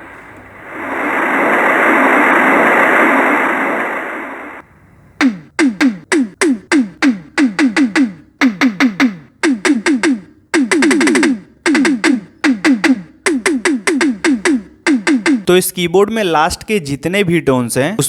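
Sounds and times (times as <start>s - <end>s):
noisy electronic hiss: 0.0s - 8.3s
electronic drum hits dropping in pitch: 5.2s - 15.5s.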